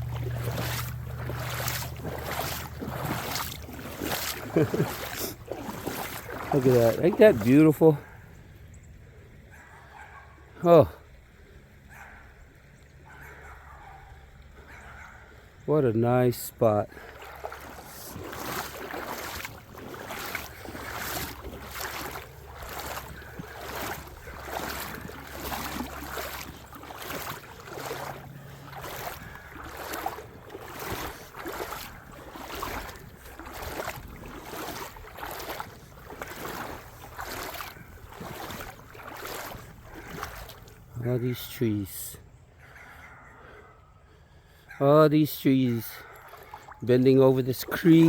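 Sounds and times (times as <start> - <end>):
footsteps walking: 0.0 - 7.7, 17.0 - 40.9.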